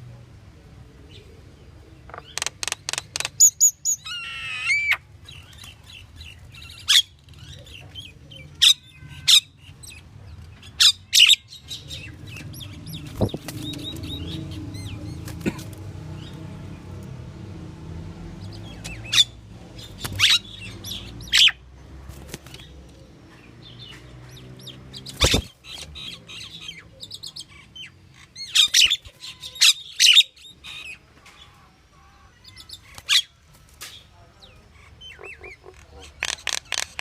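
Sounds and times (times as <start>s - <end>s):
starling calling: 2.1s - 10.0s, 34.4s - 37.0s.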